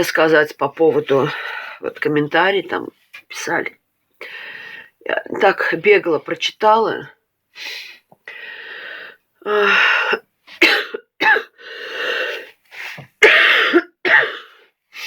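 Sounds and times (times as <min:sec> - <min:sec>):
woman coughing: 0:10.1 - 0:11.6, 0:13.2 - 0:14.6.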